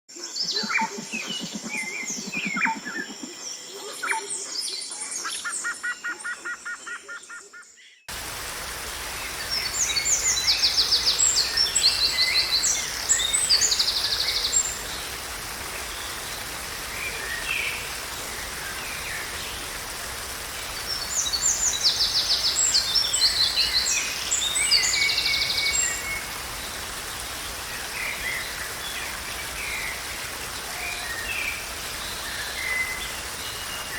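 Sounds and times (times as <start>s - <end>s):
songbirds calling: 0.2s - 33.9s
falling water rushing: 8.1s - 33.9s.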